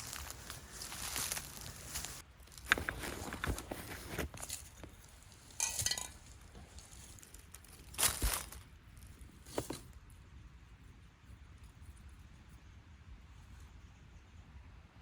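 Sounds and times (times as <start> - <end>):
footsteps crunching on woodland ground: 0.0 - 9.8.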